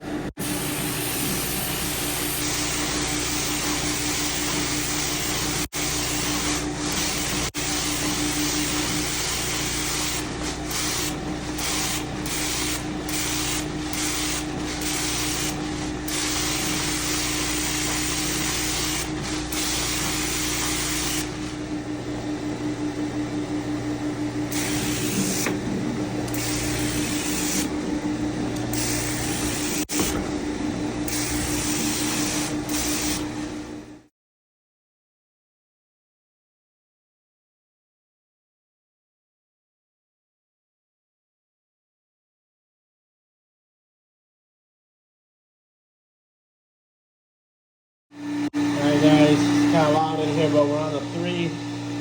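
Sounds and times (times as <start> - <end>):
carpet cleaning machine hissing: 0.0 - 22.4, 24.2 - 33.9, 48.2 - 52.0.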